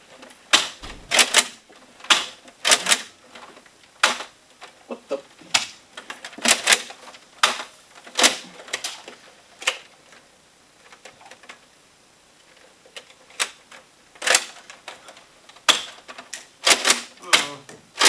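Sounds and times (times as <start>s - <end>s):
toy dart blasters priming and firing: 0.5s - 1.6s
sharp plastic clacks: 12.9s - 18.0s.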